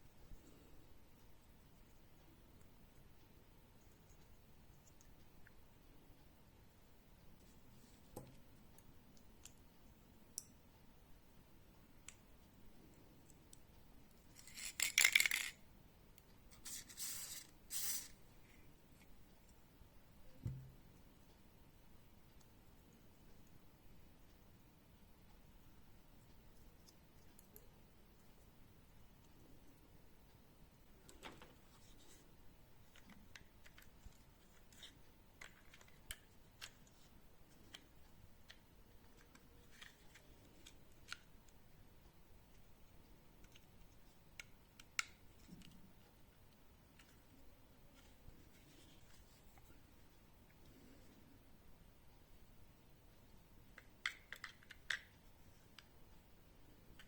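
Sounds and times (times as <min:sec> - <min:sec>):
hands rubbing small hard parts: 0:14.3 - 0:15.6, 0:16.5 - 0:18.2
pistol parts clicking: 0:14.5 - 0:15.6.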